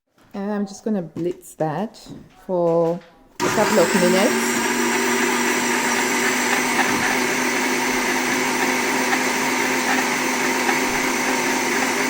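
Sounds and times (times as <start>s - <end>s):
electric blender running: 3.4s - 12.0s.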